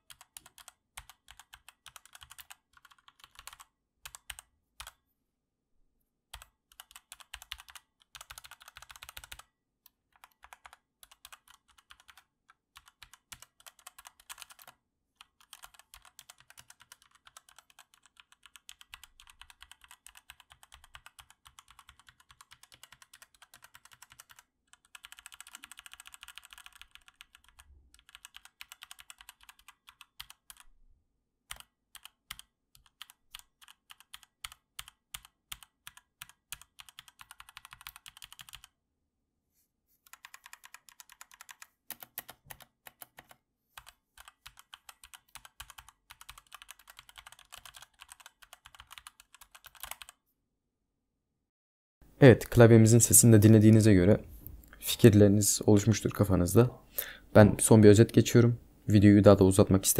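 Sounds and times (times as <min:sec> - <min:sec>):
mechanical keyboard typing: 0:00.0 - 0:05.0, 0:06.3 - 0:09.5, 0:10.1 - 0:30.7, 0:31.5 - 0:38.7, 0:40.1 - 0:50.2.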